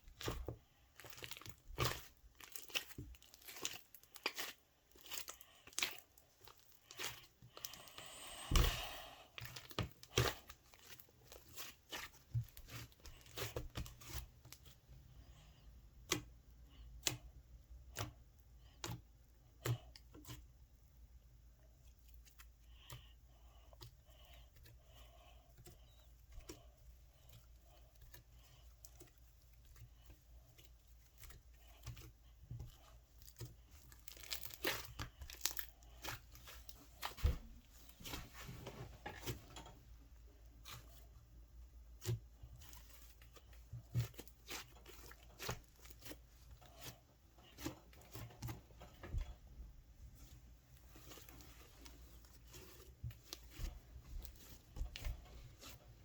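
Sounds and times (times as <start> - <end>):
slime crackling and popping: 0.0 - 7.8, 27.6 - 37.5.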